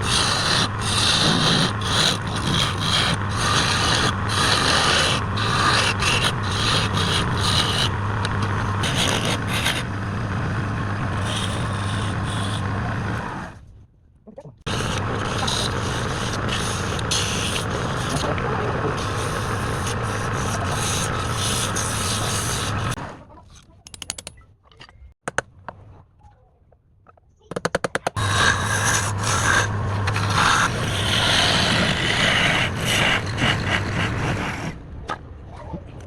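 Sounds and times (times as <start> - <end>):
wood lathe running: 0.0 - 13.4, 14.7 - 23.0, 28.2 - 34.1
tool scraping spinning wood: 0.0 - 13.6, 14.7 - 23.0, 28.2 - 34.8.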